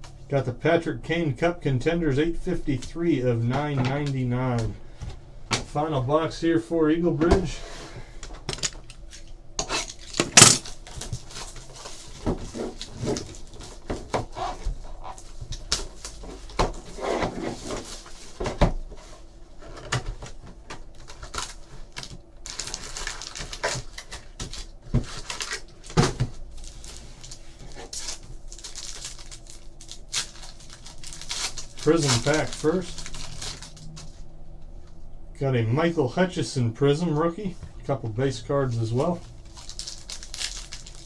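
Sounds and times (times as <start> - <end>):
cardboard and wrapper rustling: 9.8 - 34.3, 38.6 - 41.0.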